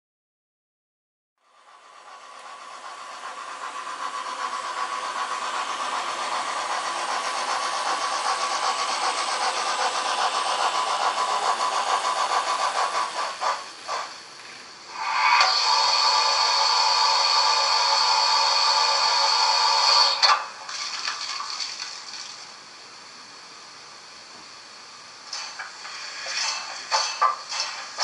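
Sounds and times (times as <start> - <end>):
model locomotive engine sound: 1.4 - 20.7, 22.4 - 28.0.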